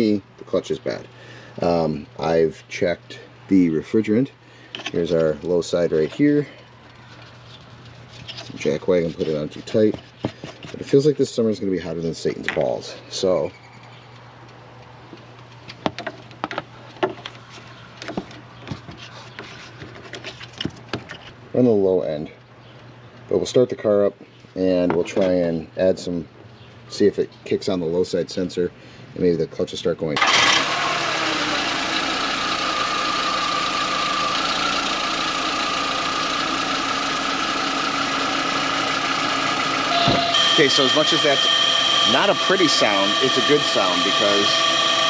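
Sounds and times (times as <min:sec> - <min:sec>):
steady engine whine: 0:30.2 - 0:45.0
car engine idling: 0:30.3 - 0:45.0.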